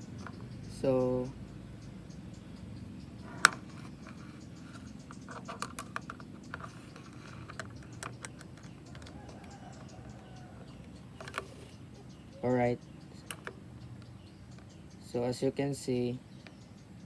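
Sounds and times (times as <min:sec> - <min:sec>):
multimeter handling clicks: 0:03.2 - 0:11.8, 0:13.2 - 0:14.7.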